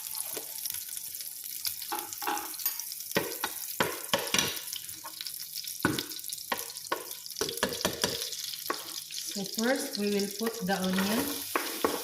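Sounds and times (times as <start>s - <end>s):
butter and oil sizzling in pan: 0.0s - 12.0s
utensil scraping a pan: 10.8s - 12.0s.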